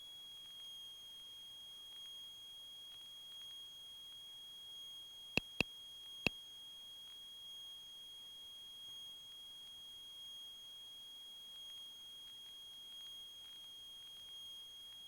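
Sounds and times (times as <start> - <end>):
sharp clicks: 5.4 - 5.6.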